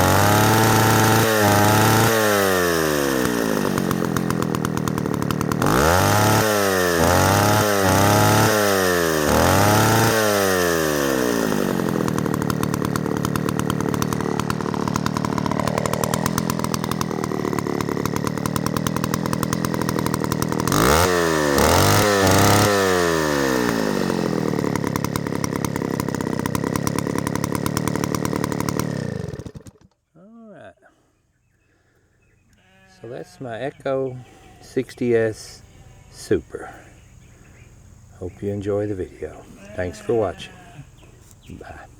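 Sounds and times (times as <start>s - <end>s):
chainsaw revving and idling: 0.0s - 30.0s.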